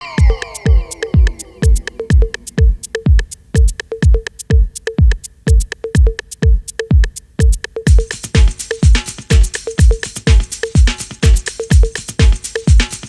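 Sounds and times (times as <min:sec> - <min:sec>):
falling synth sweeps: 0:00.0 - 0:03.0
drum machine kick drum: 0:00.0 - 0:13.0.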